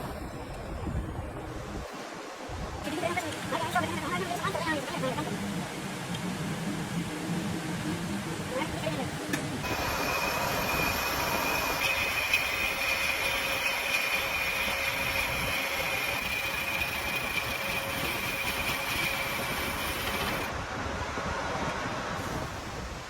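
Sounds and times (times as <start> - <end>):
metal lathe whining: 9.6 - 20.5.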